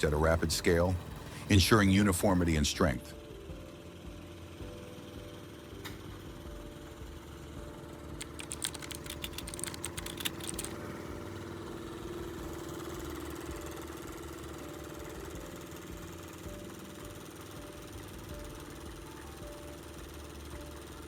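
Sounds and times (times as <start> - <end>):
sharp clicks or rattles: 8.2 - 10.8.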